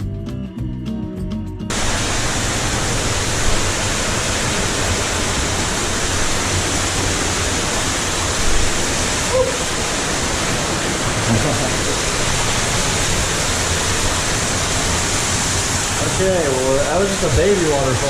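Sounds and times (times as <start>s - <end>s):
music: 0.0s - 1.7s
waterfall rushing: 1.7s - 18.0s.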